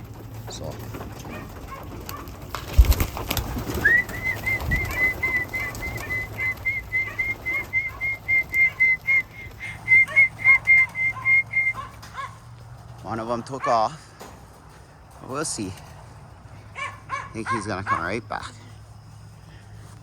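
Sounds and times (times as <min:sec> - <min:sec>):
thump and clatter: 0:00.0 - 0:03.6, 0:14.2 - 0:14.7
high whistled pips: 0:03.8 - 0:11.8.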